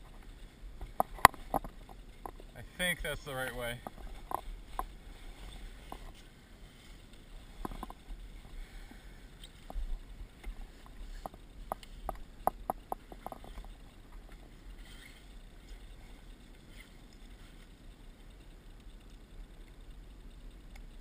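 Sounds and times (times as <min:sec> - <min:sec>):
clicks and knocks of gear: 0:00.0 - 0:02.5
rumble of wind and water: 0:00.0 - 0:21.0.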